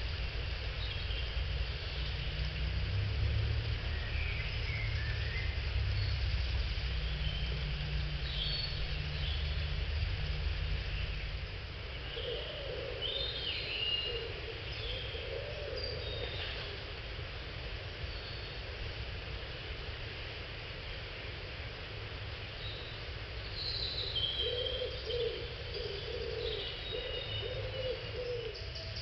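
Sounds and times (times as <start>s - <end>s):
steady low rumble: 0.0s - 12.2s
birds calling and chirping: 3.8s - 17.0s, 22.5s - 29.0s.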